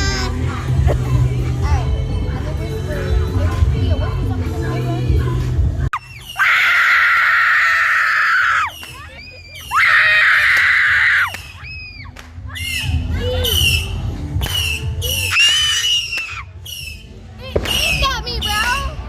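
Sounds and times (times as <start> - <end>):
people screaming: 6.0 - 13.8, 15.0 - 16.5.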